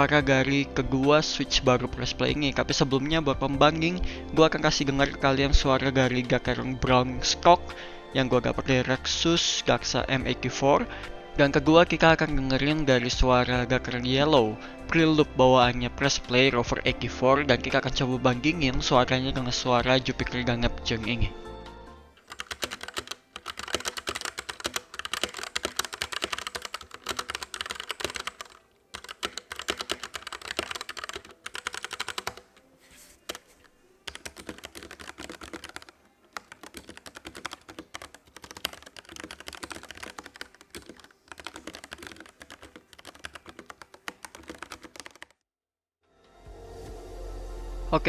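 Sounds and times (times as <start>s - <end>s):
typing on mechanical keyboards: 22.2s - 32.6s, 33.2s - 45.4s.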